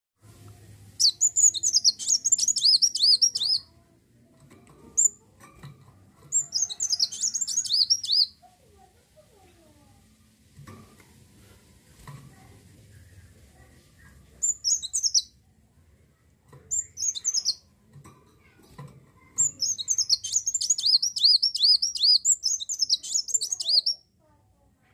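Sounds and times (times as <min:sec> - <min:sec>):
bird singing high chirps: 0:01.0 - 0:03.7, 0:06.3 - 0:08.4, 0:14.4 - 0:15.4, 0:16.7 - 0:17.7, 0:19.4 - 0:24.0.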